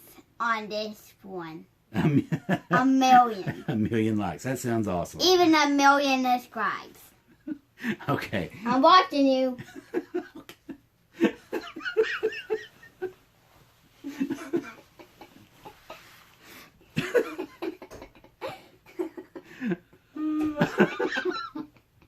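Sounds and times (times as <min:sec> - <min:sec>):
boy laughing: 0:02.0 - 0:03.7, 0:09.6 - 0:13.2, 0:14.0 - 0:16.2, 0:17.0 - 0:21.9
man laughing: 0:14.1 - 0:15.9, 0:17.0 - 0:21.8.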